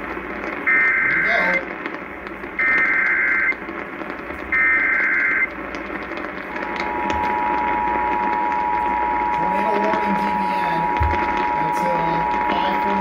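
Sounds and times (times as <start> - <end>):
data tone bursts: 0.6 - 1.7, 2.6 - 3.6, 4.4 - 5.6, 6.5 - 13.0.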